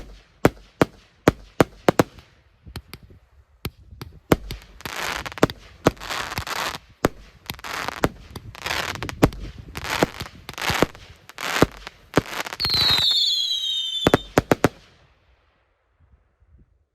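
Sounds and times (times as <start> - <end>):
firework bangs with crackling hiss: 0.0 - 15.1
falling firework whistle: 12.5 - 14.5.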